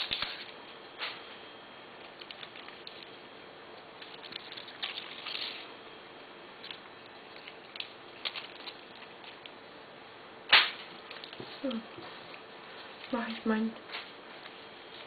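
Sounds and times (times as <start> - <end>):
plant stems rustling and clicking: 0.0 - 1.2, 2.0 - 3.2, 3.9 - 5.8, 6.6 - 9.6, 10.5 - 15.0.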